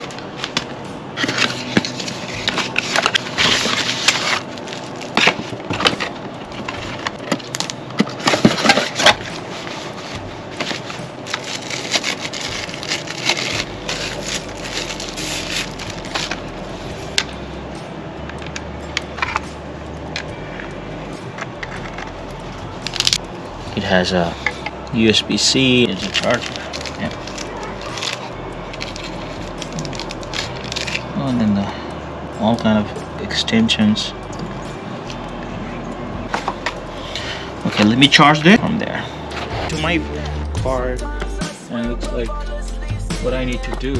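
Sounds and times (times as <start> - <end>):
packaging crinkling: 0.0 - 16.4, 25.9 - 31.1.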